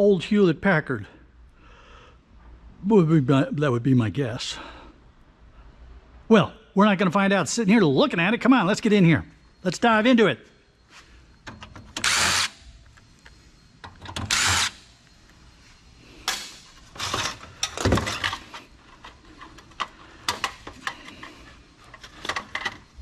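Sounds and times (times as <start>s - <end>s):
cordless drill backing out screws: 14.0s - 14.8s
metal parts clicking and knocking: 16.2s - 23.0s.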